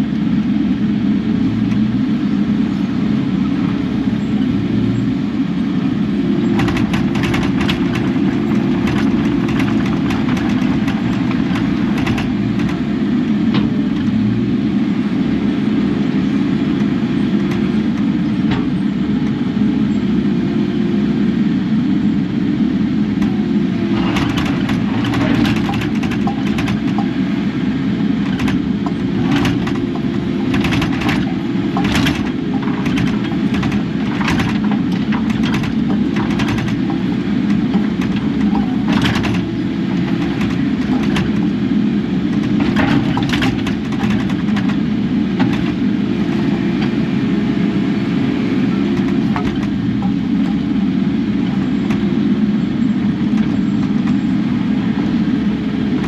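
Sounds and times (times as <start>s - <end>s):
excavator diesel engine running: 0.0s - 56.0s
sharp metal knocks and clanks: 6.5s - 12.9s, 24.0s - 27.2s, 28.2s - 41.5s.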